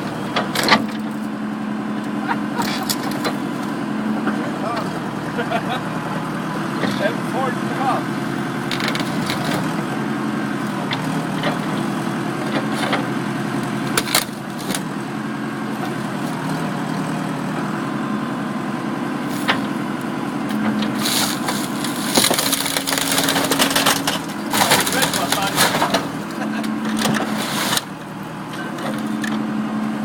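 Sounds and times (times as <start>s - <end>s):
excavator diesel engine running: 0.0s - 30.0s
car body crunching and cracking: 13.9s - 14.9s, 20.8s - 28.0s.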